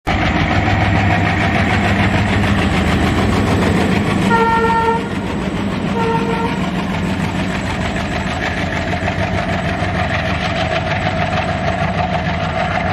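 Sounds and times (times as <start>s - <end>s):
train rumbling: 0.1s - 12.9s
train horn blasts: 4.3s - 5.1s, 5.9s - 6.6s.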